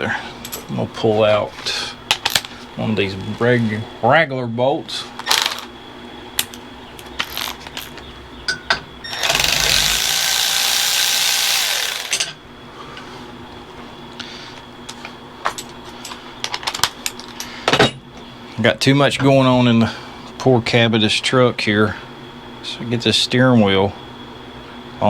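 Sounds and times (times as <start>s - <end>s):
power tool running: 9.1s - 12.4s
tools clicking and clinking: 11.7s - 12.4s.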